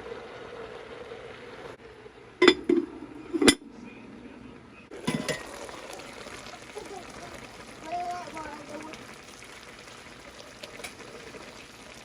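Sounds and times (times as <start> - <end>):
kitchenware clanking: 2.4 - 3.7, 4.9 - 6.4.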